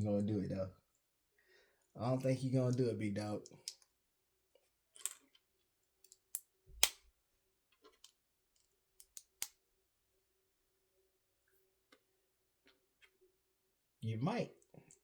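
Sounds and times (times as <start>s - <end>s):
plastic bricks clicking: 9.0s - 9.5s.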